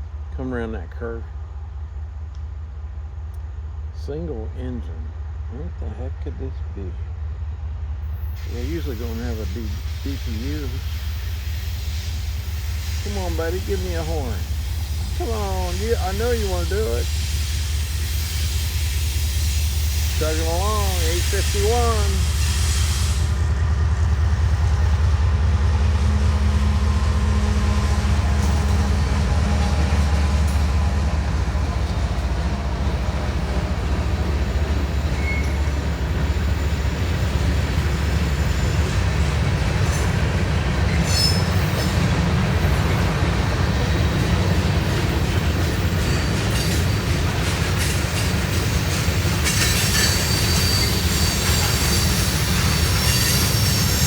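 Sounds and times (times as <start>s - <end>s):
locomotive engine rumble: 0.0s - 54.0s
freight cars rolling on rails: 8.2s - 54.0s
high wheel squeal: 8.4s - 23.5s, 34.3s - 39.2s, 40.9s - 42.0s, 49.4s - 54.0s.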